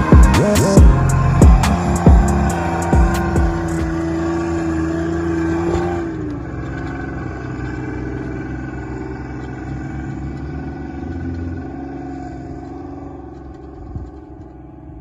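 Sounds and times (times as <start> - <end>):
high note sagging in pitch: 0.0 - 4.6
car engine running: 0.0 - 15.0.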